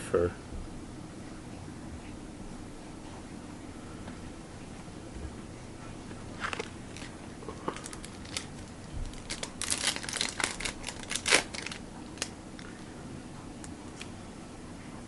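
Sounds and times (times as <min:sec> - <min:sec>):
cards being handled: 0:06.4 - 0:12.3
card pack wrapper crinkling: 0:06.4 - 0:12.7.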